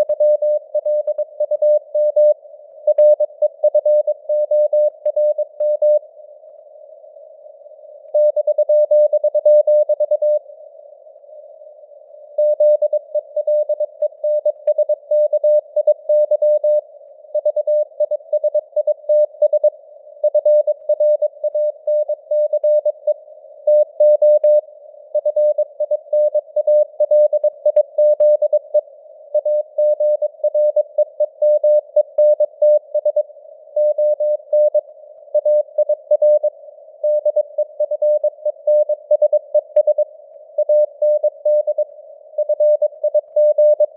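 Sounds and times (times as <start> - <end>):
faint radio hiss: 0.0 - 3.6, 6.0 - 9.6, 10.4 - 12.4, 16.8 - 18.3, 19.7 - 20.2, 22.9 - 24.0, 24.6 - 25.8, 26.4 - 31.2, 32.8 - 43.9
morse code tone: 40.6 - 43.9.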